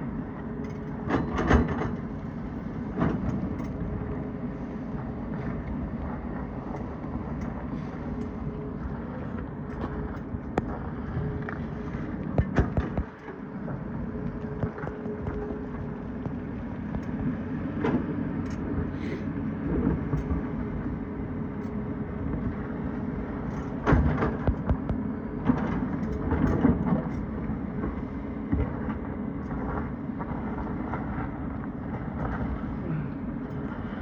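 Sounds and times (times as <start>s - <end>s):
excavator diesel engine running: 0.0s - 34.0s.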